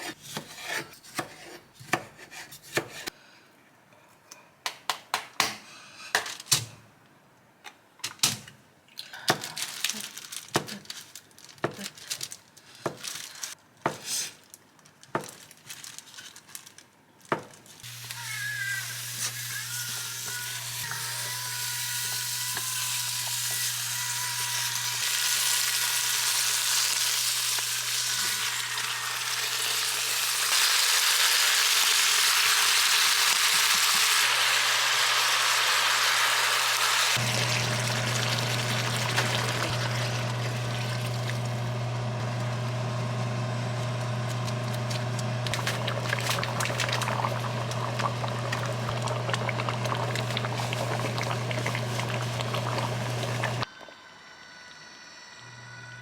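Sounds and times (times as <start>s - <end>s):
food sizzling in a hot pan: 17.8s - 43.8s.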